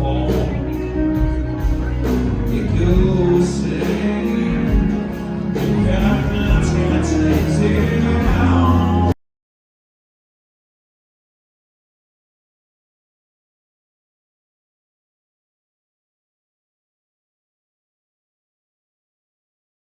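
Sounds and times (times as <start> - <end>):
man singing: 0.0 - 9.2
rock band playing: 0.0 - 9.2.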